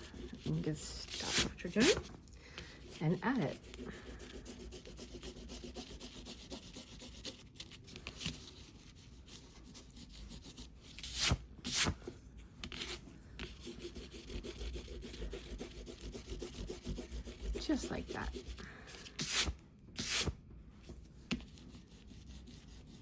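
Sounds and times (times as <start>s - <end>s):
pen scratching on paper: 2.8s - 7.4s, 12.8s - 18.6s.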